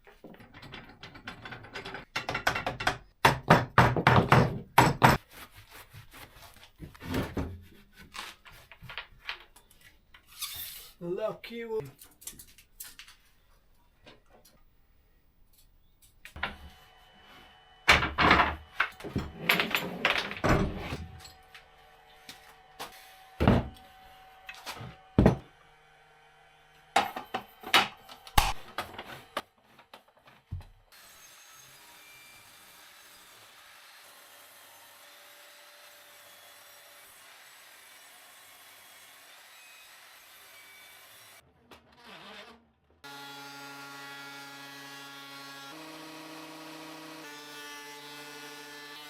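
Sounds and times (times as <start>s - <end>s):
wood pieces knocking together: 0.2s - 5.2s, 17.9s - 21.1s.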